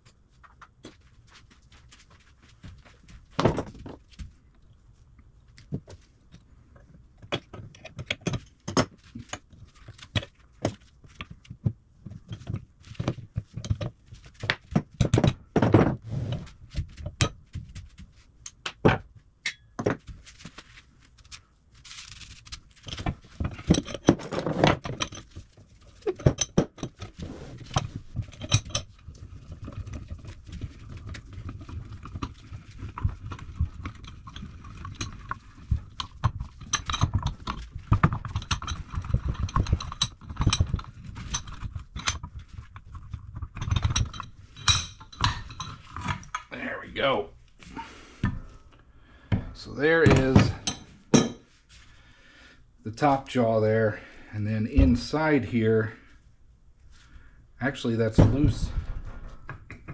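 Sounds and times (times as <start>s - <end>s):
tools and steel parts clinking: 22.0s - 46.5s, 49.6s - 51.4s
heavy metal thunks: 58.1s - 59.6s.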